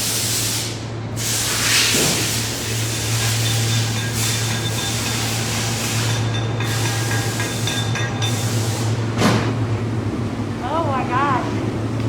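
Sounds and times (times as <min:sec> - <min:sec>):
even hiss: 0:00.0 - 0:09.2
low electrical hum: 0:00.0 - 0:12.0.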